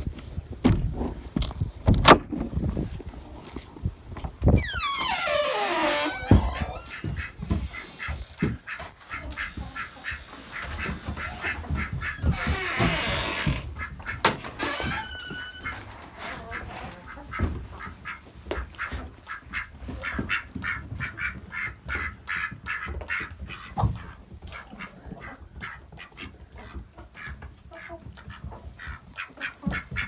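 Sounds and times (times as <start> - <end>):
chickens clucking: 4.8 - 30.0
duck quacking: 6.9 - 12.2.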